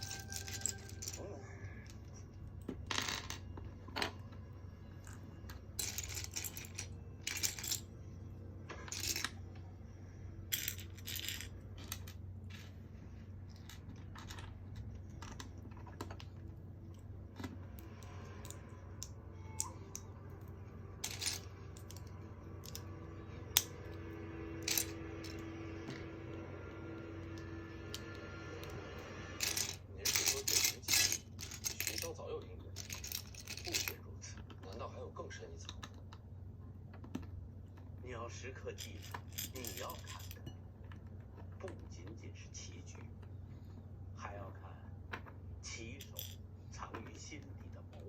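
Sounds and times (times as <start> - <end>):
plastic bricks clattering: 29.4 - 32.1, 32.8 - 34.0.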